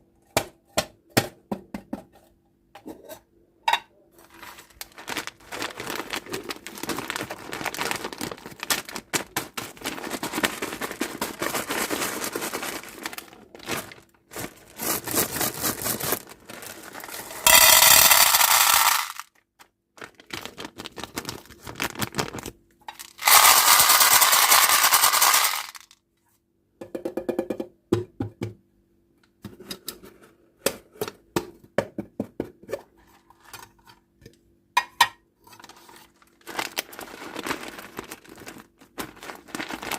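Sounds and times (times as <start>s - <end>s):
plastic wrappers rustling and crinkling: 4.2s - 25.9s, 35.6s - 39.9s.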